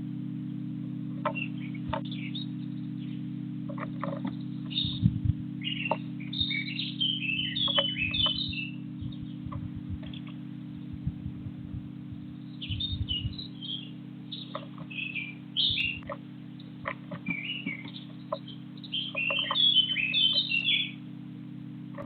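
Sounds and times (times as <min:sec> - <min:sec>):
small birds chirping: 0:00.0 - 0:22.0
steady low hum: 0:00.0 - 0:22.0
soft low knocks: 0:03.7 - 0:05.5, 0:07.7 - 0:13.5, 0:15.6 - 0:16.2.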